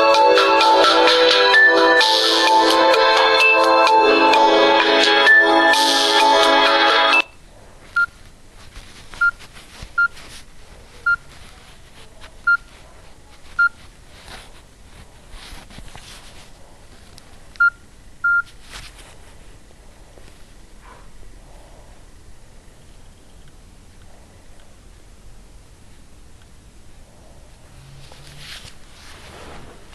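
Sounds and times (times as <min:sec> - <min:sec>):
phone ringtone melody: 0:00.0 - 0:07.3.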